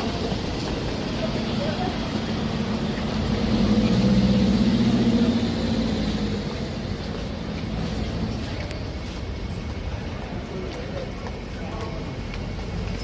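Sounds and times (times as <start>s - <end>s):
motor vehicle passing: 0.7s - 8.8s.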